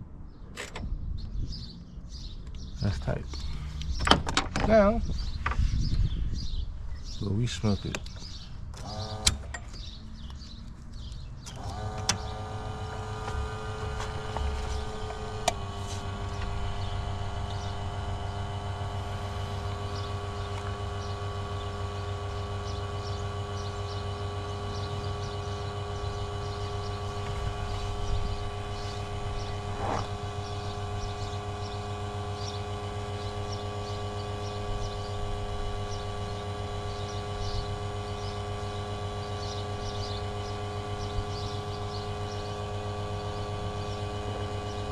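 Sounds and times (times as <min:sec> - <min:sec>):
pump humming: 0:08.8 - 0:09.6, 0:11.5 - 0:44.9.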